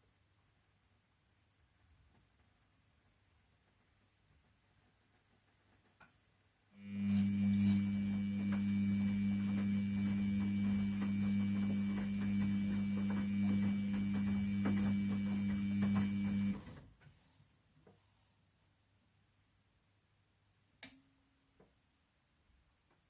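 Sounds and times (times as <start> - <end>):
washing machine motor humming: 6.8 - 16.8.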